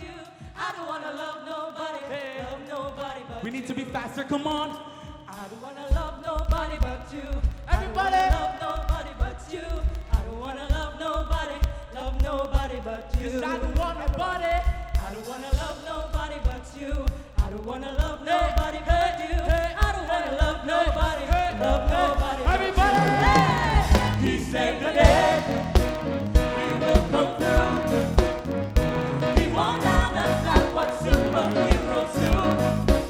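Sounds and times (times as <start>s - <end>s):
group singing: 0.0s - 33.0s
steady drum beat: 2.4s - 33.0s
gospel band playing: 18.6s - 33.0s.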